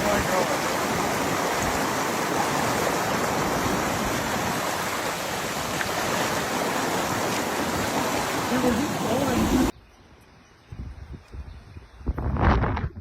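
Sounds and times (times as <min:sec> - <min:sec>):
water rushing: 0:00.0 - 0:09.7.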